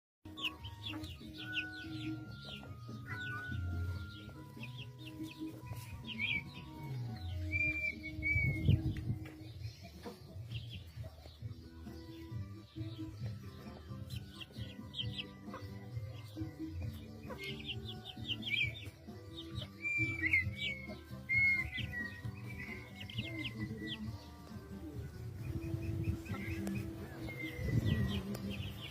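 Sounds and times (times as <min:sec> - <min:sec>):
background music: 0:00.3 - 0:28.9
partridges chirping: 0:00.3 - 0:28.9.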